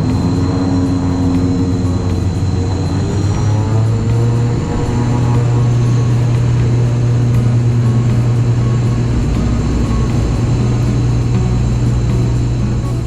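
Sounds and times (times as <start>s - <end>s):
airliner cabin drone: 0.0s - 13.0s.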